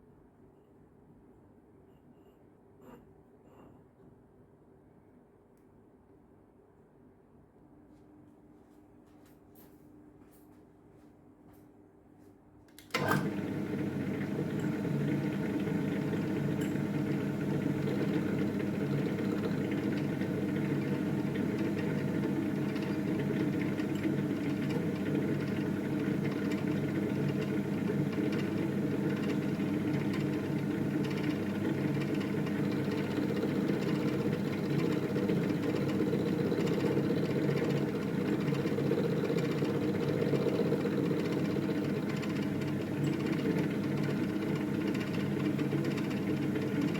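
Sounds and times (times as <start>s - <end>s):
milling machine cutting metal: 13.0s - 46.9s.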